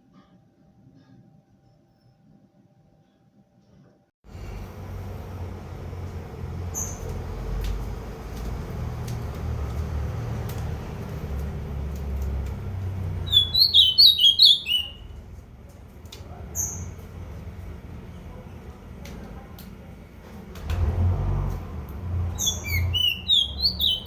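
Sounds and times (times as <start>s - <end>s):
low background rumble: 4.3s - 24.0s
bird calling sharp high notes: 13.2s - 15.1s.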